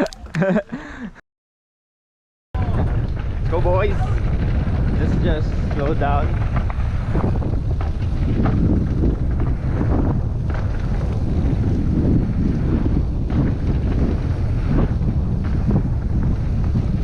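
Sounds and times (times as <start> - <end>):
wind buffeting microphone: 2.6 - 17.0
knocks from bike on trail: 4.3 - 17.0.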